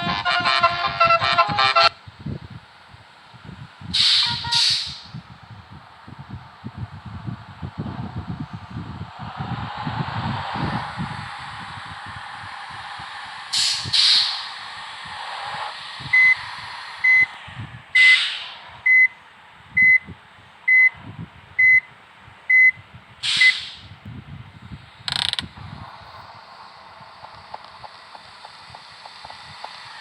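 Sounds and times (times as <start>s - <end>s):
air brake hiss: 3.9s - 5.2s, 10.2s - 18.8s, 23.2s - 24.0s
reversing beeper: 11.1s - 17.4s, 18.0s - 19.2s.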